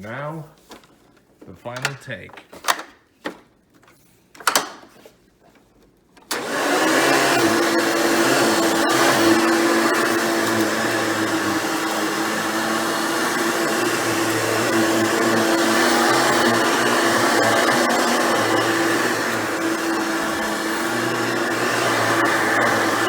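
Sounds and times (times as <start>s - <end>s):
vacuum cleaner motor humming: 6.3s - 23.0s.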